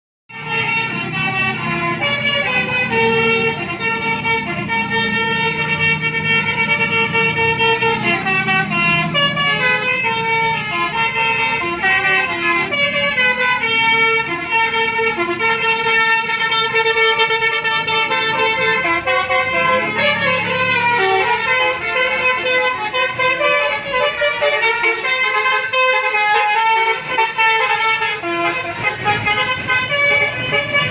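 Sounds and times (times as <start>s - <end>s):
bus engine running: 0.3s - 30.9s
multi-tone air horn tune: 0.3s - 30.9s.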